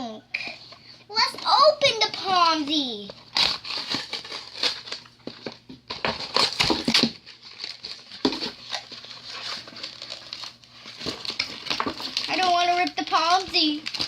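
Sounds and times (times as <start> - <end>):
toy packaging crinkling and tearing: 1.1 - 14.0.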